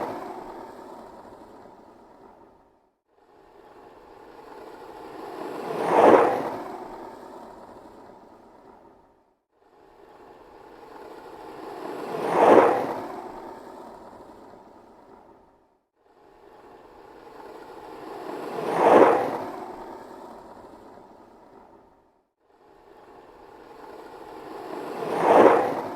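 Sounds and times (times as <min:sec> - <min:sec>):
skateboard rolling past: 0:04.6 - 0:08.9, 0:11.0 - 0:13.8, 0:17.4 - 0:21.8, 0:23.8 - 0:25.9.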